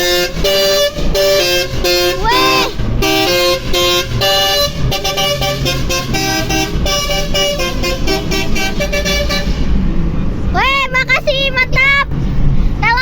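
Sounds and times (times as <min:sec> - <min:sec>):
multi-tone bus horn tune: 0:00.0 - 0:10.0
low bus engine noise: 0:00.0 - 0:13.0.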